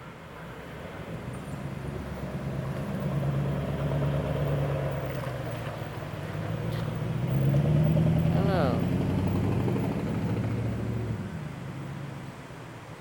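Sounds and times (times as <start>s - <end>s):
engine running and revving: 1.8s - 12.2s.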